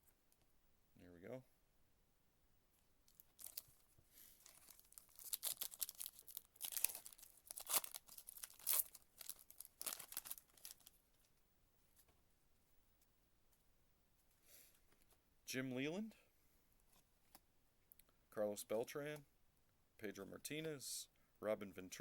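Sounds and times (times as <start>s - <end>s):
foil wrapper tearing and crinkling: 3.1s - 3.7s, 4.4s - 10.9s.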